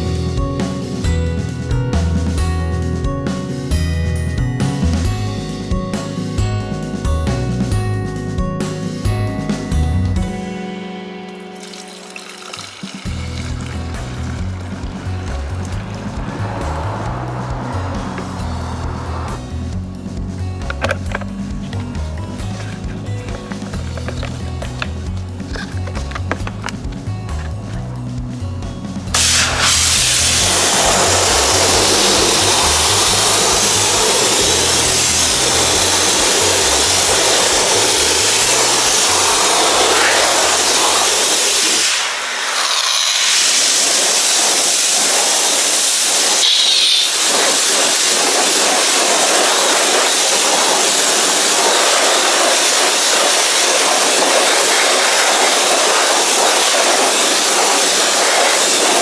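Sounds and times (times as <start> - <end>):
pressure washer spraying water: 11.0 - 28.1, 29.0 - 59.0.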